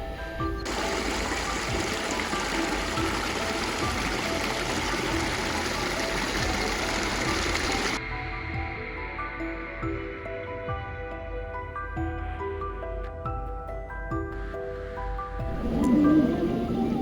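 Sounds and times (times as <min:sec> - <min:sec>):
background music: 0:00.0 - 0:17.0
running water: 0:00.6 - 0:08.0.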